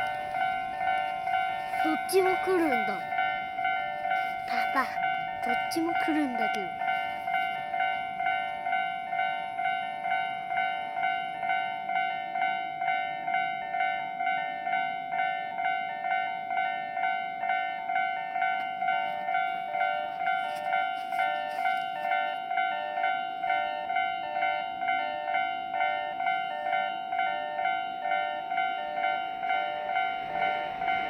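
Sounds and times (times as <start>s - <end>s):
level crossing warning bell: 0.0s - 31.0s.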